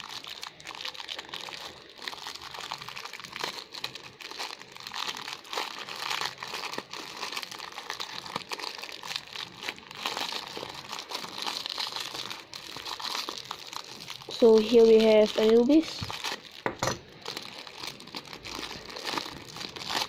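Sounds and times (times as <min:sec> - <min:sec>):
plastic packaging crinkling: 0:00.0 - 0:20.0.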